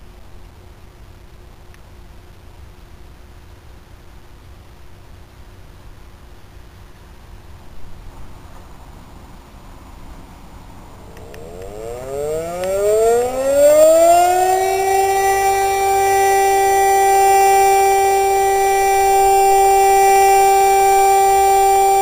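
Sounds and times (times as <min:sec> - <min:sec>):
electric motor siren wailing: 0:11.0 - 0:22.0.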